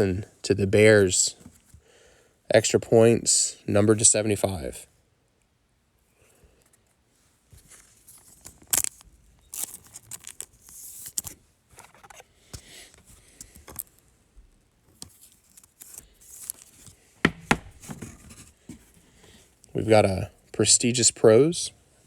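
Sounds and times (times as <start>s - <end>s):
cards sliding over one another: 9.6s - 14.0s, 15.0s - 18.9s.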